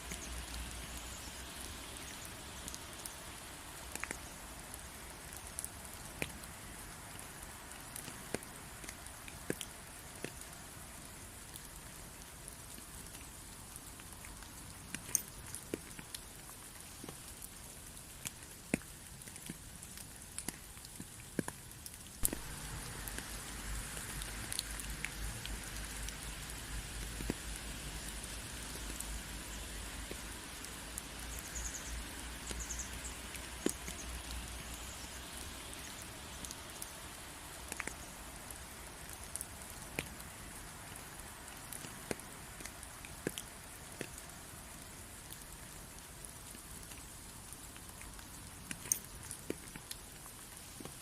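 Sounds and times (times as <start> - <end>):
rain falling: 0.0 - 51.0
drops ticking on a surface: 14.2 - 30.6.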